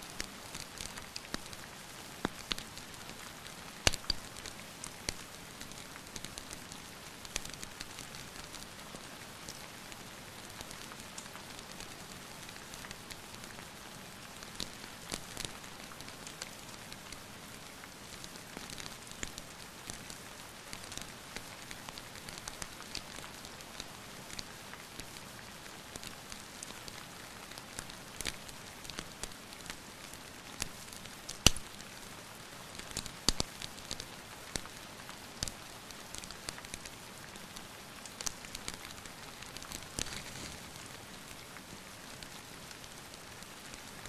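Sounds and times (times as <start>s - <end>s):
rain hiss: 0.0s - 44.0s
wood fire crackling: 0.1s - 44.0s
fire popping: 3.8s - 6.4s, 30.6s - 31.8s, 32.8s - 41.5s.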